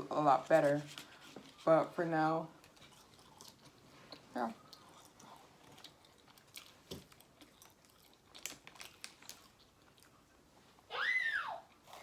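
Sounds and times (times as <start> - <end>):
chewing and crunching food: 0.4 - 10.9
baby squealing: 10.9 - 11.6.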